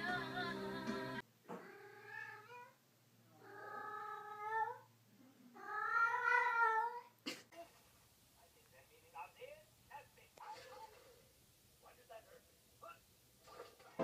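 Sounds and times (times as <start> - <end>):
cat yowling: 5.6 - 7.1.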